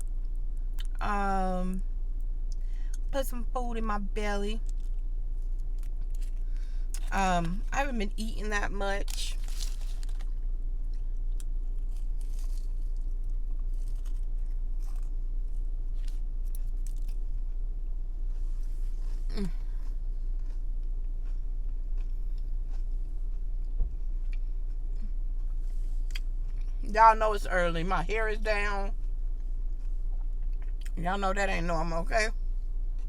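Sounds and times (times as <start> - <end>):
low hum: 0.0 - 33.0
person chewing food: 4.7 - 7.1, 9.4 - 26.8, 29.0 - 30.9.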